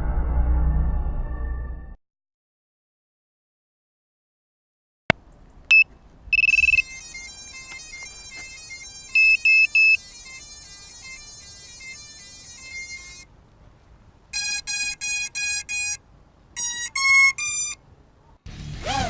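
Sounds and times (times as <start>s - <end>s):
high electronic startup beeps: 5.7s - 13.2s.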